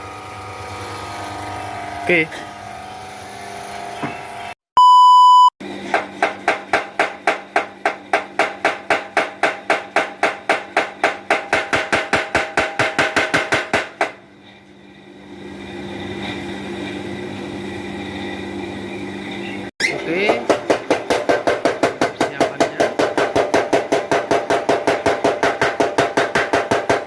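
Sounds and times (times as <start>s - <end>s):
motor humming: 0.0s - 4.6s
short electronic beep: 4.0s - 5.5s
power hammer striking: 20.1s - 27.0s.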